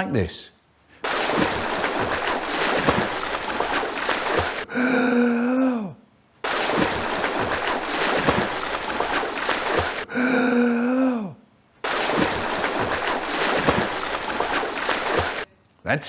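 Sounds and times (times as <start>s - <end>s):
water splashing and sloshing: 1.0s - 4.7s, 6.4s - 10.1s, 11.8s - 15.5s.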